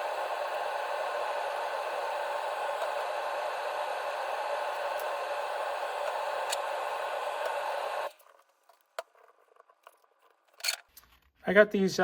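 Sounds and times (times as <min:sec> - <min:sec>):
steady hiss: 0:00.0 - 0:08.2.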